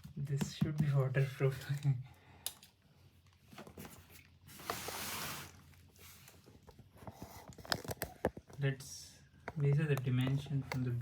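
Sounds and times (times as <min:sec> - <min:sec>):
tool bag rustling scrape: 0:04.4 - 0:06.4.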